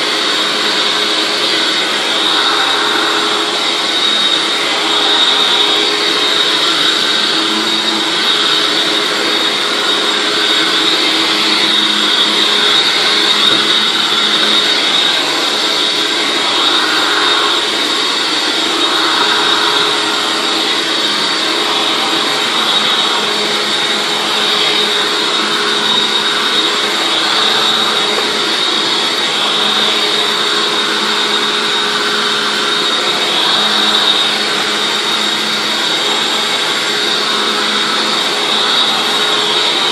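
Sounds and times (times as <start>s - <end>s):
upright vacuum cleaner running: 0.0s - 39.9s.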